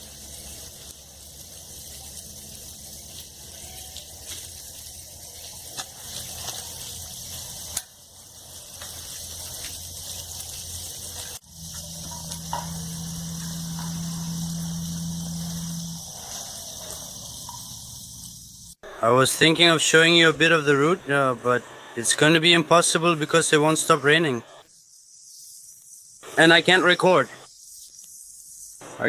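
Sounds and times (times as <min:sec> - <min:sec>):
steady rain hiss: 0:00.0 - 0:29.0
low drone: 0:11.4 - 0:18.8
low steady hum: 0:11.4 - 0:18.8.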